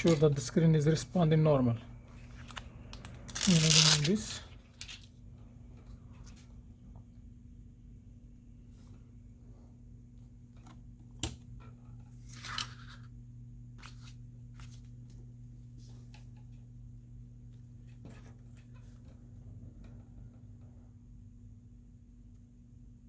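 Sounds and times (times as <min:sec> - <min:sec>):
low electrical hum: 0:00.0 - 0:23.0
plastic film rustle: 0:02.9 - 0:05.1.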